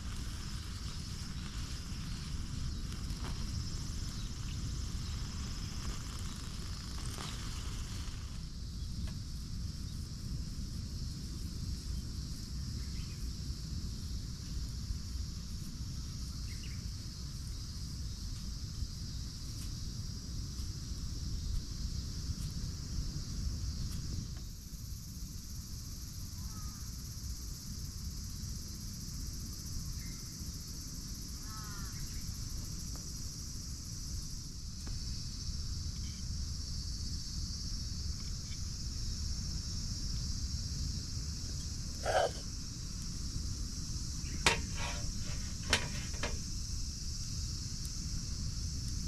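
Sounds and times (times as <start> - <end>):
insects chirping: 0.0 - 49.0
bird calls: 42.0 - 42.4.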